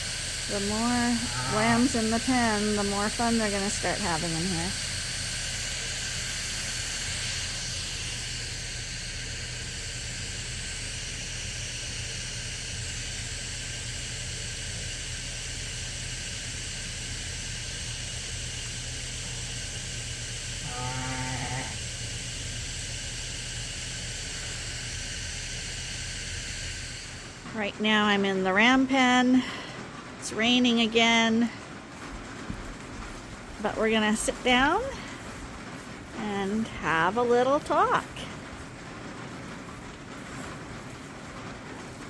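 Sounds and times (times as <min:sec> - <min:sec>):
steady hiss and low hum: 0:00.0 - 0:42.0
sheep bleat: 0:01.2 - 0:01.8, 0:20.6 - 0:21.8.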